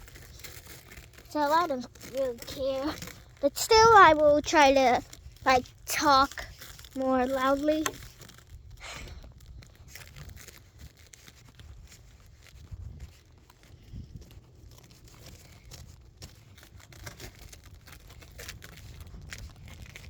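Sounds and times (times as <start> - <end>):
snow crunching: 0.0 - 8.2.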